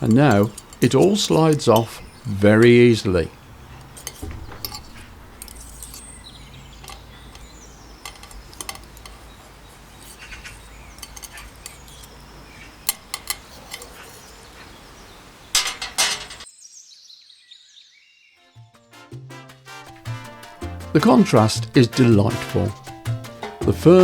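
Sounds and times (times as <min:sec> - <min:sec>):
cutlery clinking on a plate: 0:03.8 - 0:09.3, 0:10.0 - 0:14.4, 0:15.6 - 0:16.5.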